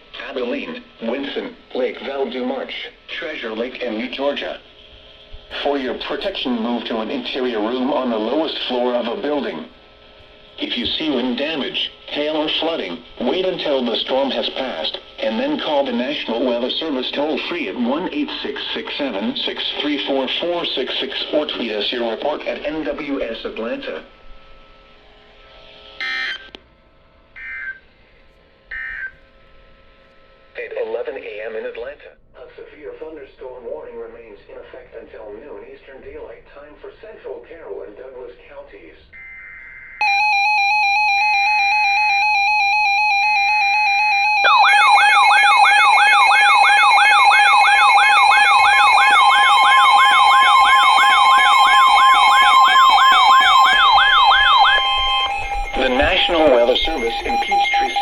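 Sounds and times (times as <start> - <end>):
faint steady hum: 0.0 - 58.0
loud sweeping alarm tone: 26.0 - 26.5, 27.4 - 27.9, 28.7 - 29.2, 39.1 - 58.0
steady alert tone: 43.7 - 58.0
harsh buzzy data bursts: 44.5 - 58.0.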